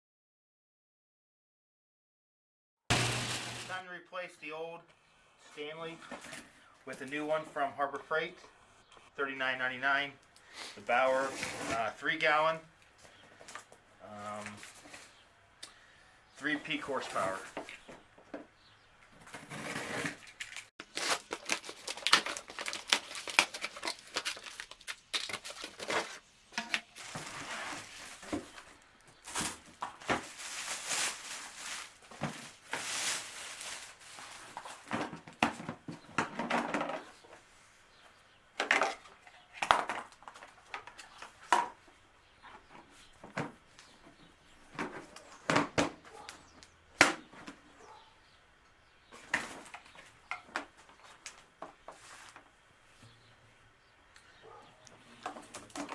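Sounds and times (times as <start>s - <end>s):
cardboard and plastic rustling: 10.8s - 15.2s, 19.2s - 37.5s, 38.6s - 47.7s, 49.1s - 52.6s, 55.0s - 55.9s.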